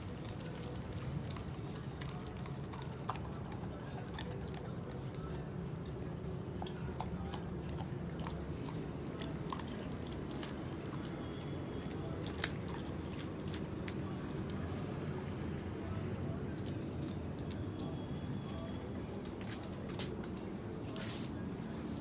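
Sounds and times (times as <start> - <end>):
dog chewing meat: 0.0 - 22.0
low background hum: 0.0 - 22.0
teeth clicking and crunching: 6.5 - 14.9.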